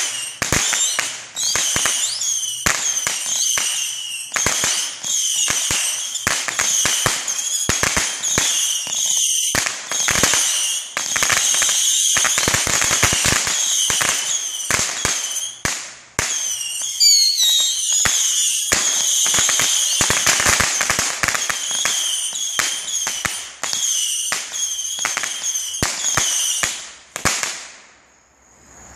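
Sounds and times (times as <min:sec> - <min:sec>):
high-pitched whistle: 0:00.0 - 0:12.3, 0:13.1 - 0:15.6, 0:16.3 - 0:20.0
fireworks crackling bangs: 0:00.0 - 0:28.0.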